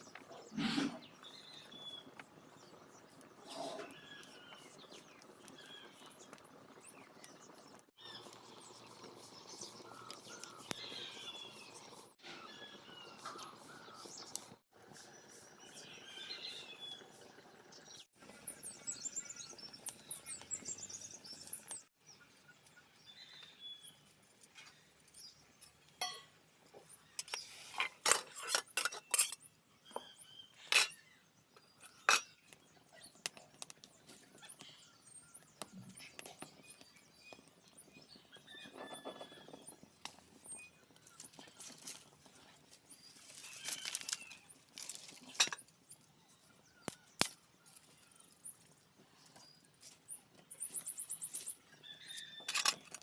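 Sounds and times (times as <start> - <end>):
birds chirping: 0.0 - 27.6, 29.0 - 52.8.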